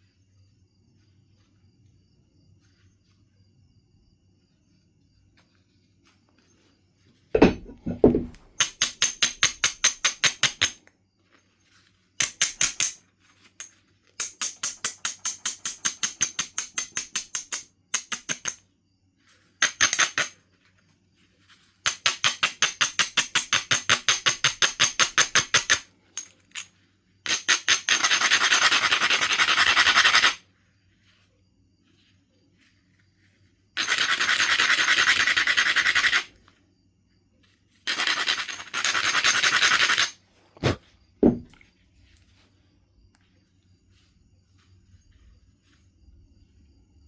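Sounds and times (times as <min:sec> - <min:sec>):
short knock: 0:07.4 - 0:08.5, 0:41.2 - 0:41.6
stone rasping on flint: 0:27.3 - 0:30.4, 0:33.8 - 0:36.4, 0:37.9 - 0:41.5.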